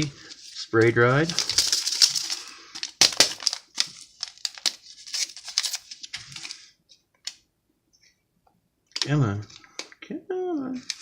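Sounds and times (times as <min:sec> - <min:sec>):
plastic packet crinkling and tearing: 0:00.0 - 0:06.7.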